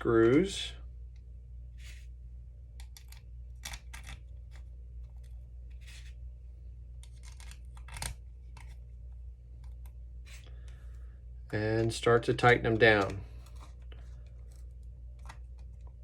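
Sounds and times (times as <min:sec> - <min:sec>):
low steady hum: 0:00.0 - 0:16.0
small screws clicking and scraping: 0:02.8 - 0:06.2, 0:07.0 - 0:08.8, 0:12.8 - 0:16.0.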